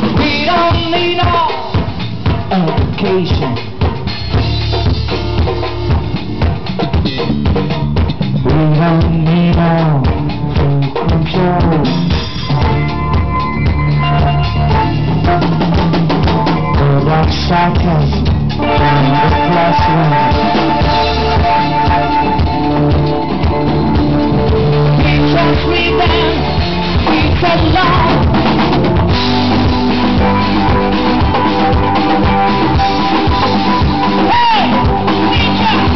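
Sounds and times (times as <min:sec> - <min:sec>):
bass line: 0:00.0 - 0:35.9
drum kit with rimshots: 0:00.0 - 0:35.9
held melody notes: 0:09.3 - 0:35.9.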